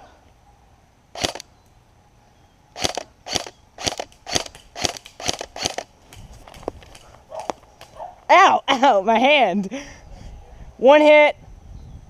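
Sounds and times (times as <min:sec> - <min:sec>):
airsoft gun shots: 0:01.2 - 0:01.4, 0:02.8 - 0:05.9.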